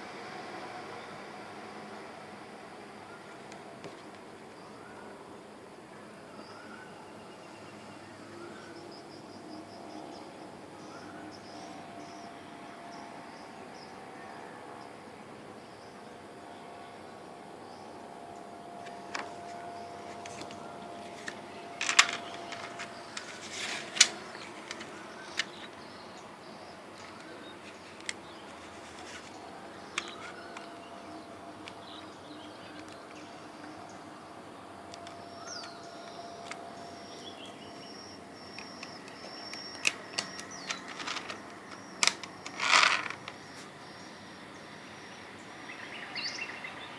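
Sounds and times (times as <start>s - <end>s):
faint steady hum: 0.0s - 46.9s
short rustles: 18.8s - 25.7s
sharp clicks of handling: 18.8s - 25.9s, 27.0s - 30.7s, 38.5s - 43.6s.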